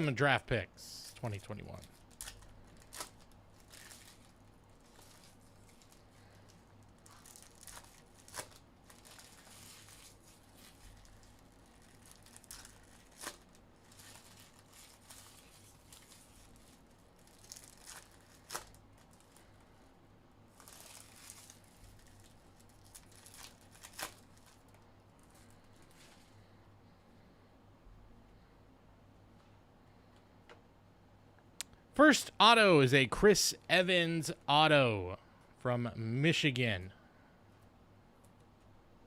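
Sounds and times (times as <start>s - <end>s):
wrappers crinkling: 1.6s - 19.7s, 20.5s - 26.4s.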